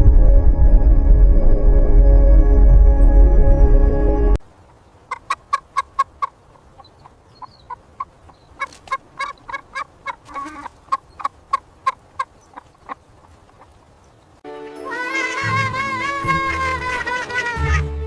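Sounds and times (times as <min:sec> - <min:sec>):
hen clucking: 0:04.7 - 0:13.8, 0:14.8 - 0:17.9.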